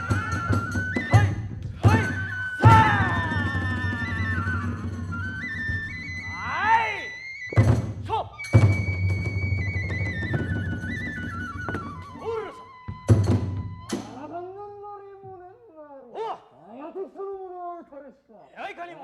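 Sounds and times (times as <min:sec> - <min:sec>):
bamboo flute melody: 0:00.0 - 0:14.8.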